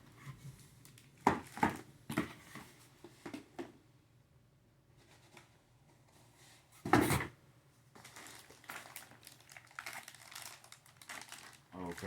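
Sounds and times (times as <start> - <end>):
packaging rustling: 8.0 - 12.0.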